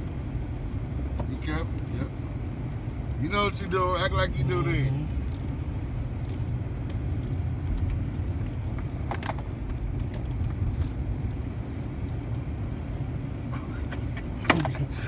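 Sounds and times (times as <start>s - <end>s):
car engine and road rumble: 0.0s - 15.0s.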